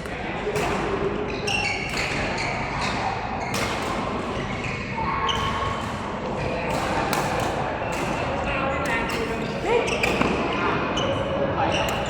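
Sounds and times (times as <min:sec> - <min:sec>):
racket hitting shuttlecock: 0:03.5 - 0:04.3, 0:06.7 - 0:08.2.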